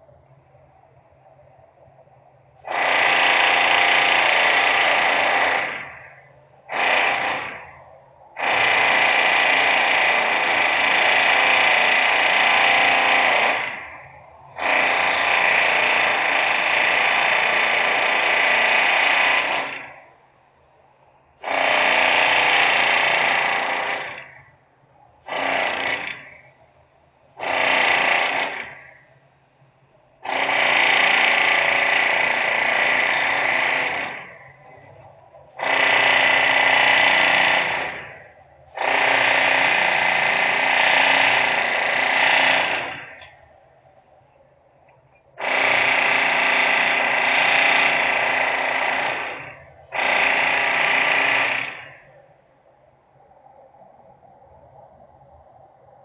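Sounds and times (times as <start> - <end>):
industrial power tool: 2.6 - 20.2, 21.4 - 24.6, 25.2 - 26.6, 27.4 - 29.2, 30.2 - 43.4, 45.4 - 52.2.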